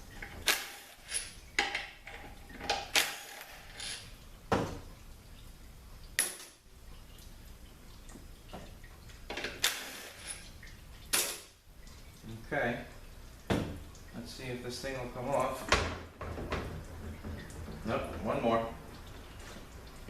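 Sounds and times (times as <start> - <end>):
metal tools and bolts clinking: 0.2 - 4.1, 9.6 - 10.5.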